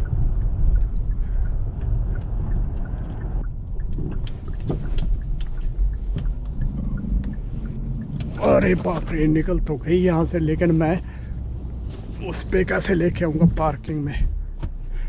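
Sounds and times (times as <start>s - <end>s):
faint clicks: 0.0s - 9.8s
car engine and tyres rumbling: 0.0s - 15.0s.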